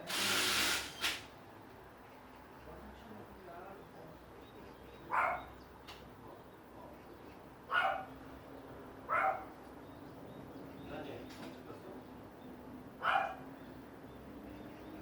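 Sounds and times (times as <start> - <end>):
dog barking: 5.1 - 5.5, 7.7 - 8.1, 9.1 - 9.5, 13.0 - 13.4.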